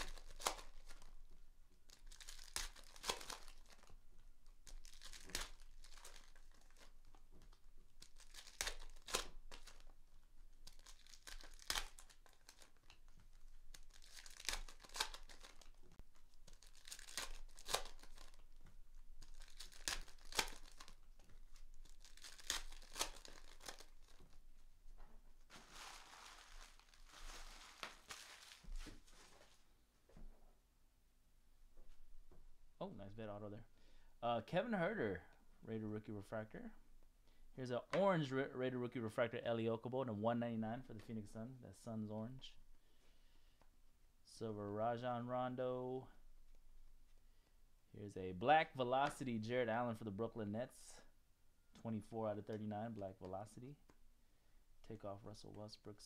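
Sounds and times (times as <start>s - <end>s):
foil wrappers tearing and crinkling: 0.0s - 1.2s, 1.8s - 10.0s, 10.6s - 24.4s, 25.5s - 29.6s.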